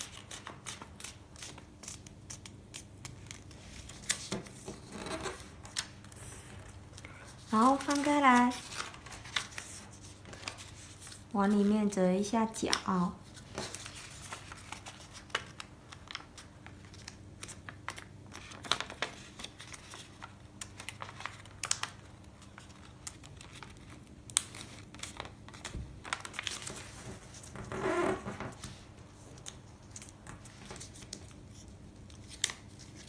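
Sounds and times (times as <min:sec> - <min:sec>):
paper crinkling and rustling: 0:00.0 - 0:33.0.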